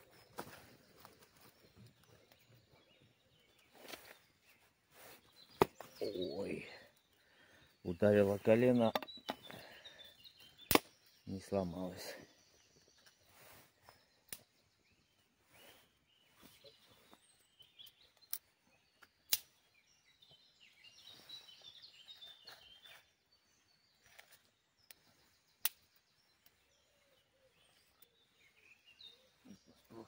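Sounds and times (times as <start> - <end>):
birds chirping faintly: 0.0 - 30.0
sharp clicks and snaps: 19.3 - 19.5.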